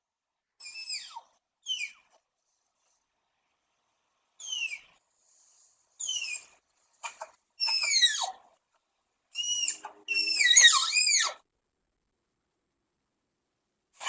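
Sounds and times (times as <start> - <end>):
animal squealing: 0.6 - 2.1, 4.4 - 5.0, 6.0 - 8.6, 9.3 - 11.4.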